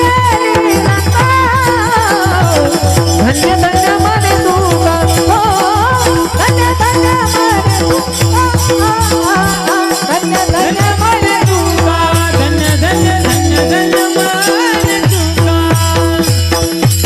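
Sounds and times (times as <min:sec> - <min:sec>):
bending vocal melody: 0:00.0 - 0:16.7
jingling hand cymbals: 0:00.0 - 0:17.0
low drum beats: 0:00.9 - 0:17.0
held drone note: 0:01.7 - 0:14.8.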